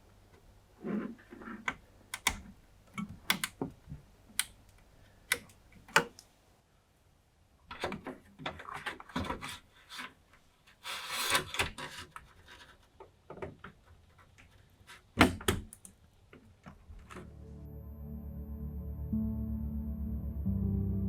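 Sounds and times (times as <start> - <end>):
rubbing and scraping: 8.5 - 13.0.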